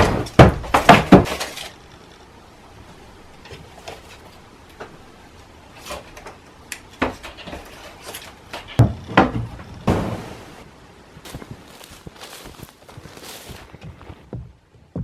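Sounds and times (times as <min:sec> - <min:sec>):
knocks and clunks of handling: 0:00.0 - 0:01.8, 0:05.8 - 0:10.3.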